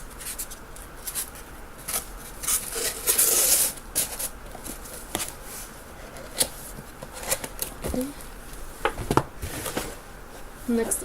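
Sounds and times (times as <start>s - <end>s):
packaging scraping rub: 0.2s - 7.7s.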